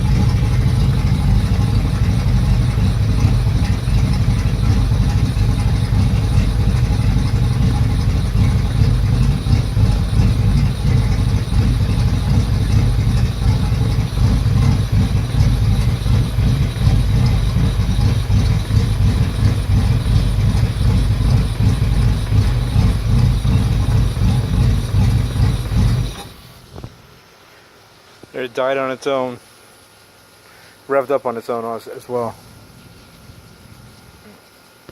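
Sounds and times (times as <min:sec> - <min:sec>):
outboard motor idling roughly: 0:00.0 - 0:27.2.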